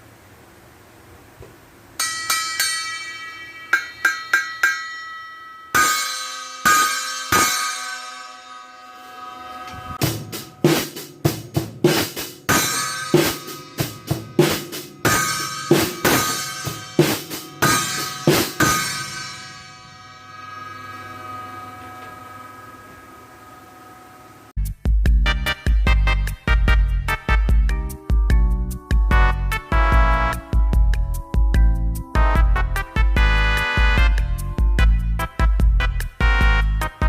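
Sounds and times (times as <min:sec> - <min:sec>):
cymbal strikes ringing: 0:02.0 - 0:24.6
cymbal crash: 0:05.7 - 0:24.5
drum kit beat: 0:05.8 - 0:08.5, 0:09.1 - 0:21.4, 0:24.6 - 0:37.0.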